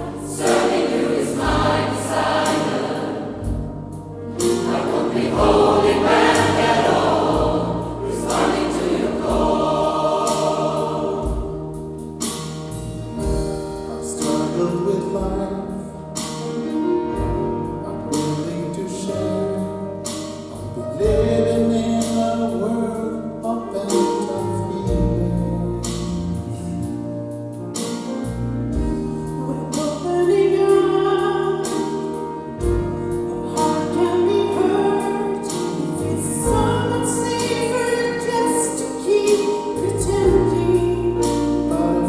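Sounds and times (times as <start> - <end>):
gospel choir singing: 0.0 - 12.0, 33.4 - 42.0
band accompaniment: 0.0 - 42.0
drum hits: 4.4 - 12.0.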